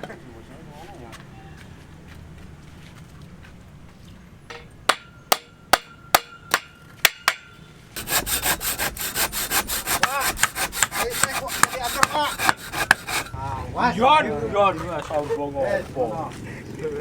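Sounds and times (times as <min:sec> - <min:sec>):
ringing tool strikes: 0:04.5 - 0:07.6
scraping or sawing strokes: 0:08.0 - 0:13.7.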